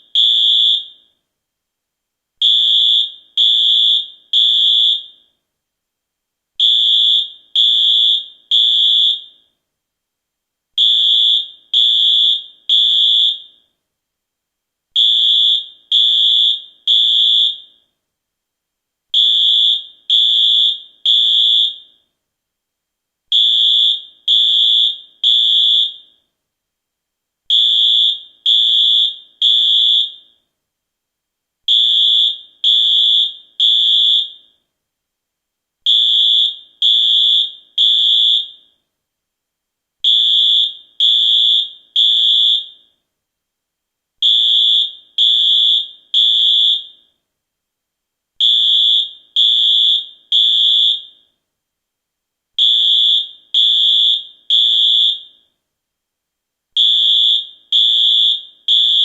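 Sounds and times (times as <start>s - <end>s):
fire alarm high-pitched beeps: 0.0s - 1.2s, 2.4s - 5.4s, 6.6s - 9.6s, 10.8s - 13.7s, 15.0s - 17.9s, 19.2s - 22.1s, 23.3s - 26.3s, 27.5s - 30.4s, 31.7s - 34.6s, 35.9s - 38.8s, 40.1s - 43.0s, 44.2s - 47.2s, 48.4s - 51.4s, 52.6s - 55.6s, 56.8s - 59.0s.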